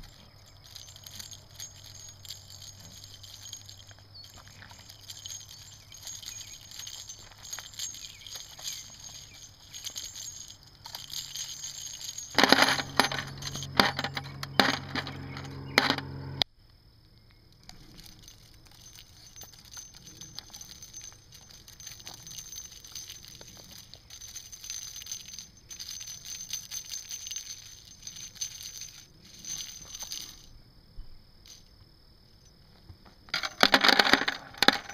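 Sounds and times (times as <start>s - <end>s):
brass cases clinking: 0.0s - 16.4s, 17.7s - 30.5s, 33.3s - 34.9s
gravel crunching: 0.0s - 16.4s, 17.6s - 30.6s.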